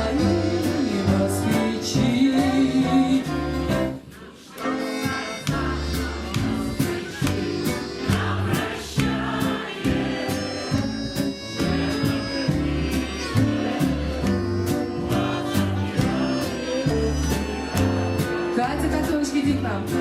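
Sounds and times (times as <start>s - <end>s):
instrumental backing music: 0.0s - 20.0s.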